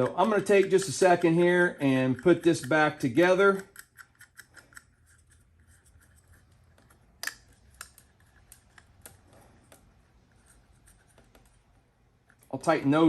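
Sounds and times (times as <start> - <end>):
small parts clicking and knocking: 0.0 - 11.6.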